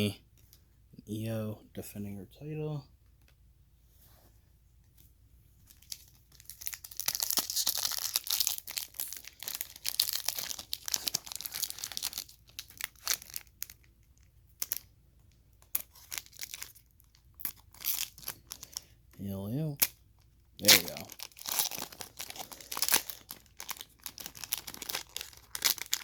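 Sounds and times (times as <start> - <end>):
card pack wrapper crinkling: 5.6 - 14.9, 15.6 - 18.8, 20.6 - 26.0.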